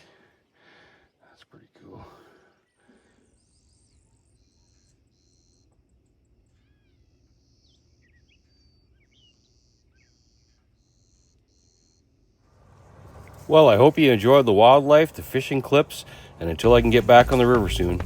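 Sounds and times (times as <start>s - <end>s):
small birds chirping: 0.0s - 18.0s
insect trilling: 3.5s - 5.8s.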